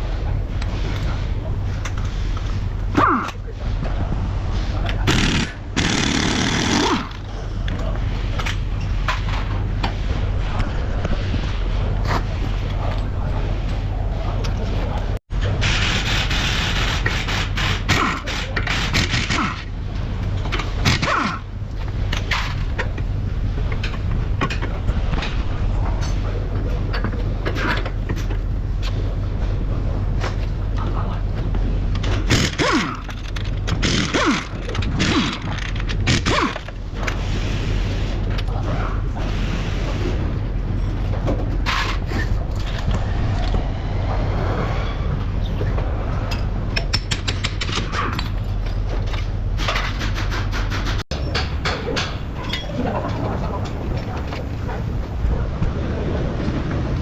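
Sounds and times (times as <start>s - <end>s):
steady low hum: 0.0s - 57.0s
metal tools knocking and clicking: 46.3s - 52.8s.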